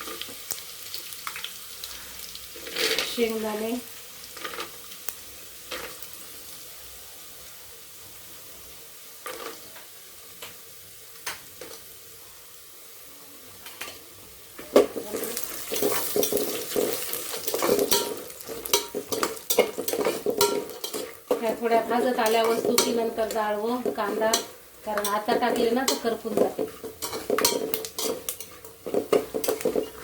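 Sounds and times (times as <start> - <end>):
food sizzling in oil: 0.0 - 30.0
spoon scraping and clattering pan: 14.7 - 30.0.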